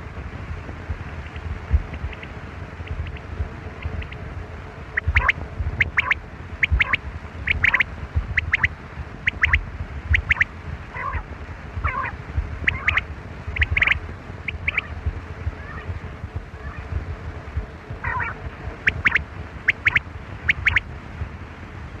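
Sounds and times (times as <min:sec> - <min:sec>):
wind rumble on microphone: 0:00.0 - 0:22.0
quail whistled calls: 0:03.8 - 0:04.2, 0:05.0 - 0:11.2, 0:11.8 - 0:15.0, 0:18.0 - 0:20.8.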